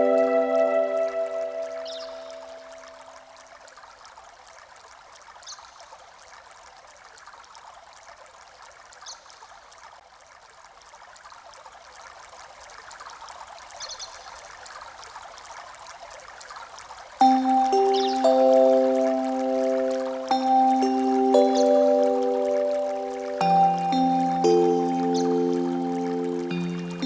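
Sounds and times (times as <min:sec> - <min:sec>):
high chirps: 0:00.0 - 0:03.0, 0:17.2 - 0:27.0
stream water trickling: 0:00.0 - 0:27.0.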